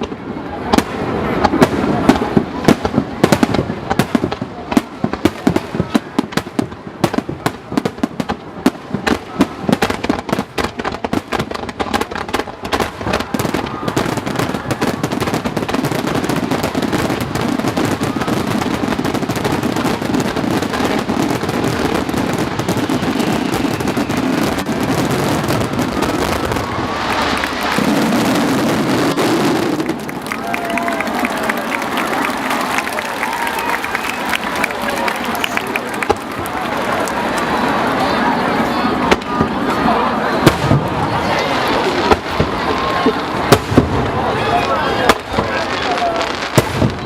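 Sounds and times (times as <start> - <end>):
fireworks bursting and crackling: 0.0 - 47.0
crowd cheering: 11.9 - 47.0.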